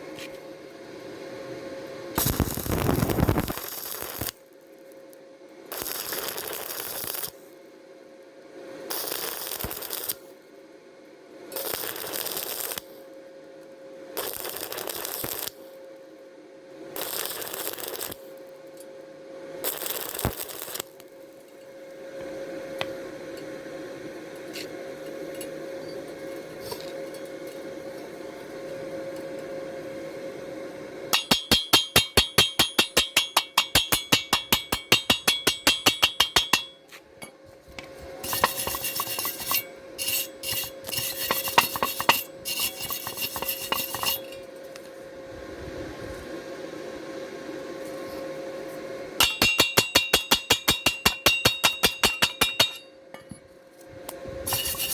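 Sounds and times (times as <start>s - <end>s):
welding arc crackling and hissing: 2.1s - 7.6s, 8.8s - 10.4s, 11.5s - 13.2s, 14.1s - 15.8s, 16.8s - 18.6s, 19.6s - 23.2s, 23.8s - 36.9s, 37.6s - 52.8s, 53.8s - 54.9s
hammer striking steel tube: 31.1s - 37.4s, 38.2s - 44.3s, 49.2s - 53.4s.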